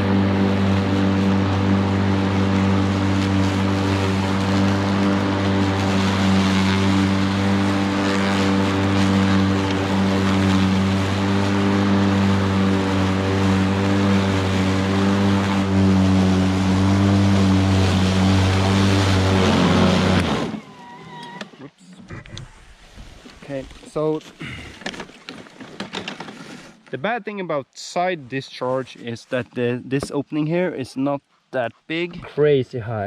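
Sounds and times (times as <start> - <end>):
electric lawnmower cutting grass: 0.0 - 21.5.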